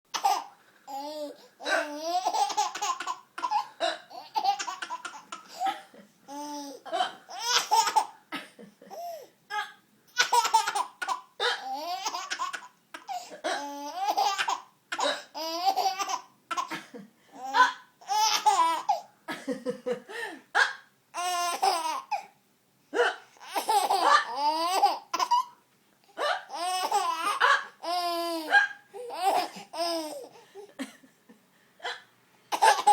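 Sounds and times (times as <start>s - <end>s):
baby laughing: 0.1s - 8.2s, 10.1s - 16.8s, 17.4s - 19.0s, 21.2s - 22.2s, 23.4s - 25.6s, 26.5s - 30.3s, 32.5s - 32.9s.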